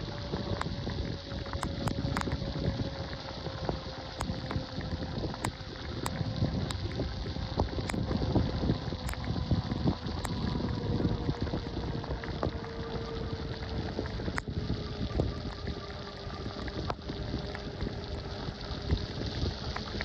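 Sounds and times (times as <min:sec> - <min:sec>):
faint steady whine: 0:00.0 - 0:20.0
steady rushing noise: 0:00.0 - 0:20.0
wind buffeting microphone: 0:00.0 - 0:20.0
sharp ticks: 0:00.2 - 0:14.5.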